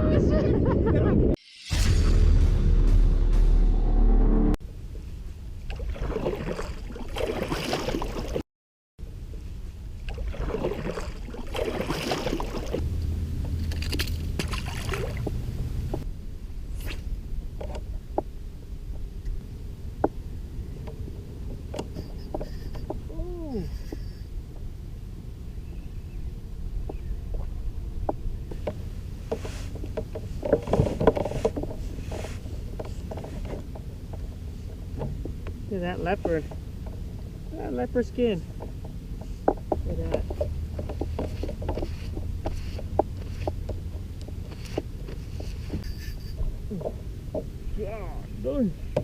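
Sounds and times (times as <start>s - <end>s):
steady low rumble: 0.0s - 6.0s, 12.6s - 49.0s
water splashing against kayak: 5.6s - 8.4s, 9.8s - 16.0s, 26.9s - 47.8s.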